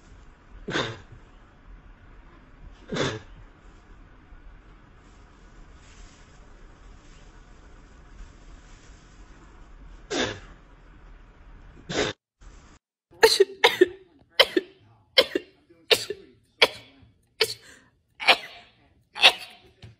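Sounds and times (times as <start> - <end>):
person coughing: 13.2 - 19.7.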